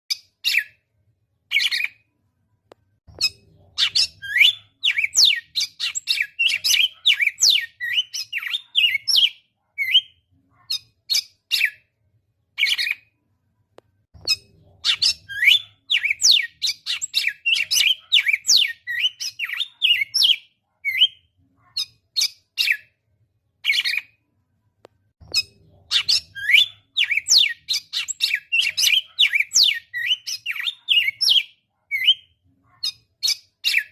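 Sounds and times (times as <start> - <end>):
seedeater bird singing chirps: 3.1 - 11.8, 14.2 - 22.9, 25.2 - 33.9.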